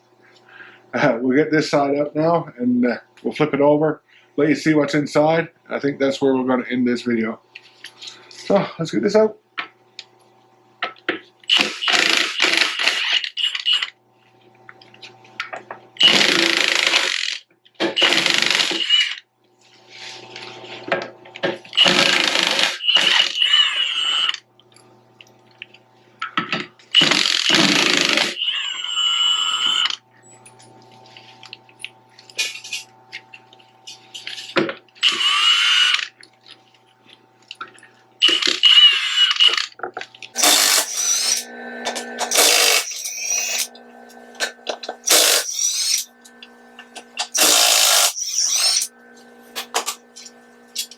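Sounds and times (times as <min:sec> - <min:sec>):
faint steady hum: 0:00.0 - 0:11.8
power tool running in bursts: 0:40.4 - 0:50.9.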